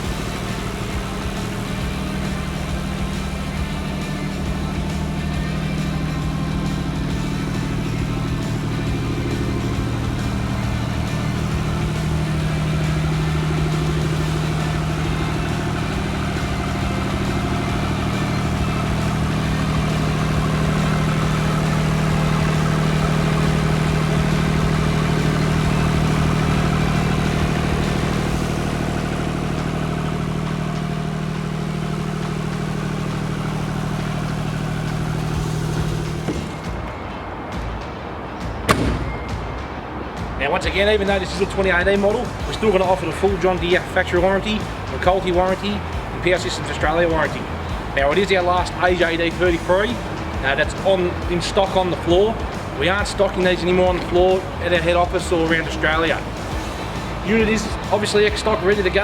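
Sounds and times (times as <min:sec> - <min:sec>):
diesel generator running: 0:00.0 - 0:59.0.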